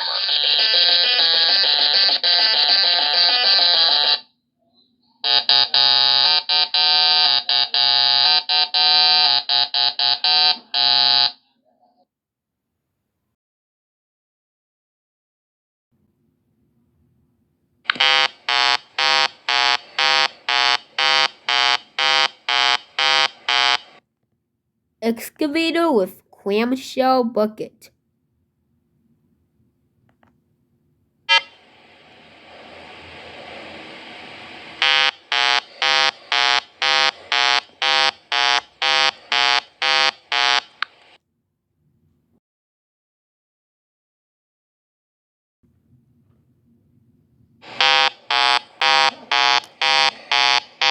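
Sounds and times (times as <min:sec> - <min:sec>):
buzzing electronic alarm beeping: 0:05.3 - 0:11.4, 0:18.0 - 0:23.9, 0:34.8 - 0:40.9, 0:47.8 - 0:50.9.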